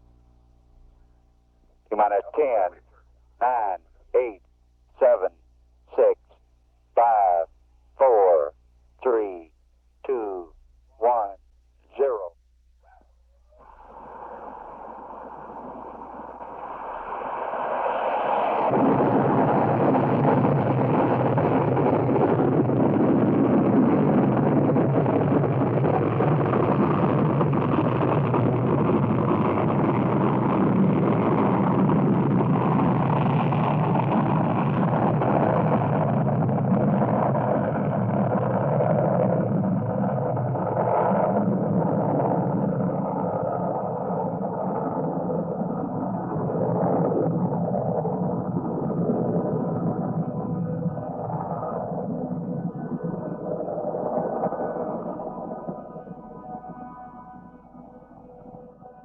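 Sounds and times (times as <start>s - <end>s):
low hum: 0.0s - 59.0s
muffled static noise: 0.0s - 59.0s
faint wavering tones: 43.5s - 59.0s.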